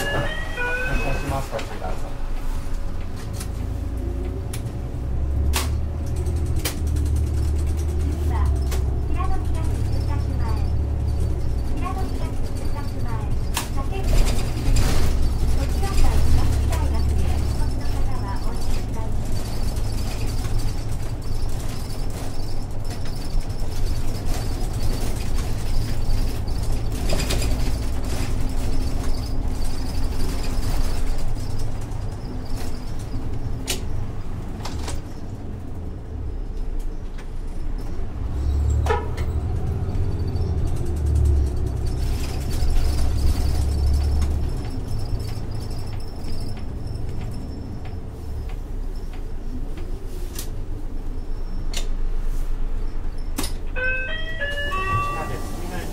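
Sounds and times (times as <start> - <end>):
short falling tone: 0.0 - 1.6
bus diesel engine rumble: 0.0 - 55.9.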